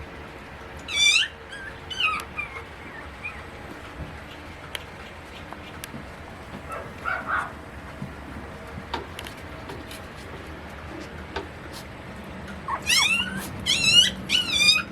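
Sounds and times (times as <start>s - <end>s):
puppy whining: 0.8s - 4.5s, 12.5s - 14.9s.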